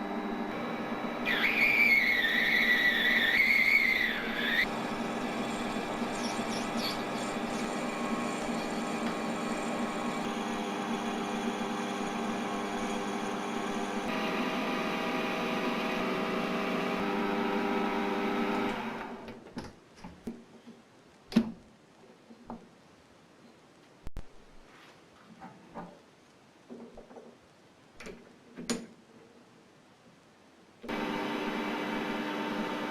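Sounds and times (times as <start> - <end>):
small motor whirring: 0.0 - 14.2.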